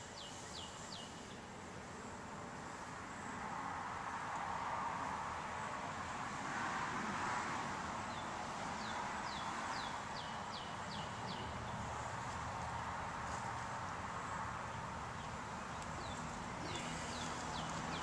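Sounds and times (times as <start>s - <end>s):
small bird singing: 0.0s - 1.5s, 8.1s - 12.3s, 14.7s - 18.0s
background hiss: 0.0s - 18.0s.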